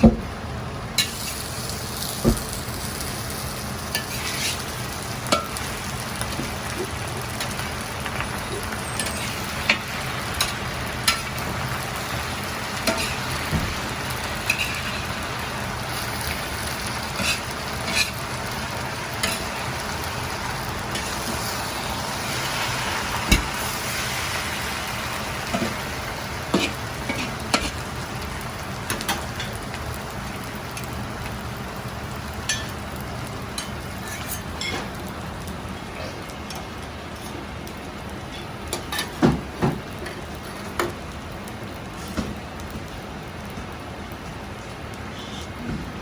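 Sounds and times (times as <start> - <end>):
chicken sizzling in a wok: 0.0 - 46.0
metal ladle clanking on wok: 12.8 - 13.2, 19.2 - 19.5.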